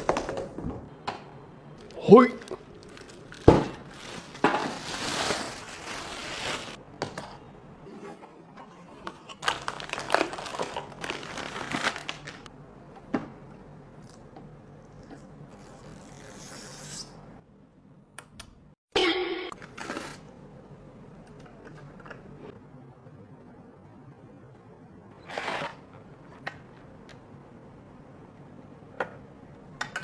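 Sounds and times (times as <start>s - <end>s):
packaging crinkling: 1.8s - 6.8s, 9.4s - 12.5s.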